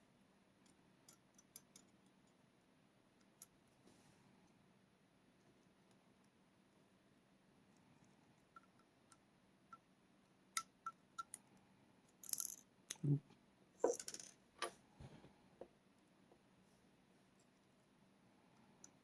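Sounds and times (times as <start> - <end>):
small metallic clicks: 0.6 - 2.4, 10.5 - 13.0.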